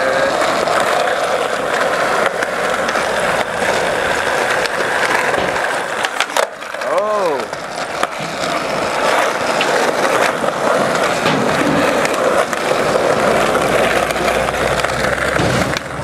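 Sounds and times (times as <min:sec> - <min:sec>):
skateboard clicks: 0:00.0 - 0:16.0
skateboard wheels rolling: 0:00.0 - 0:16.0.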